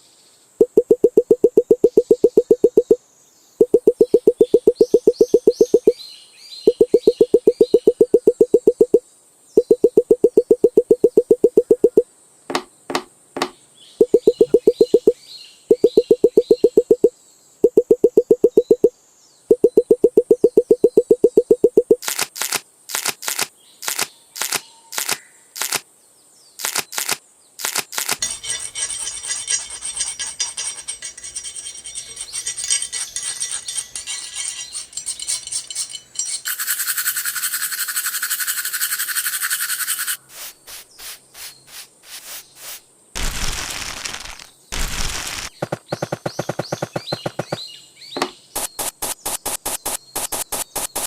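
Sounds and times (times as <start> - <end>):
sharp clicks: 19.5 - 25.8, 26.6 - 28.2, 48.6 - 51.0
scraping: 28.0 - 37.2
steady high hiss: 36.0 - 45.6
rapid even tapping: 45.6 - 47.6.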